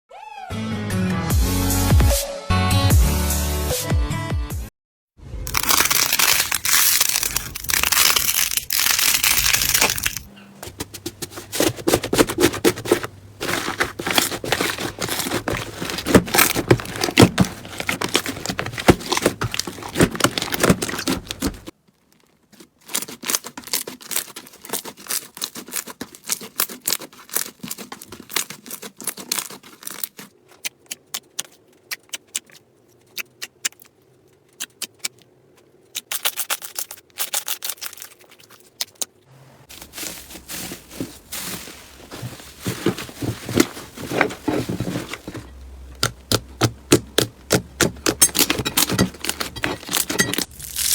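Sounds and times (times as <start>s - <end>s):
crunchy slime crackling and popping: 5.5s - 10.3s, 11.4s - 35.2s, 35.9s - 39.1s, 42.2s - 50.9s.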